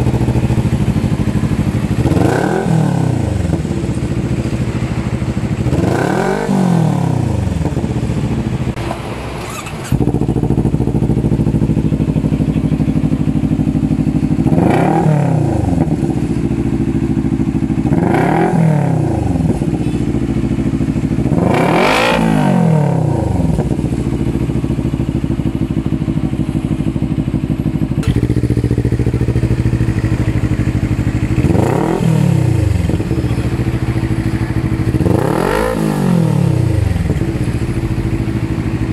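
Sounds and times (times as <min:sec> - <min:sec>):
motorcycle engine idling and revving: 0:00.0 - 0:38.9.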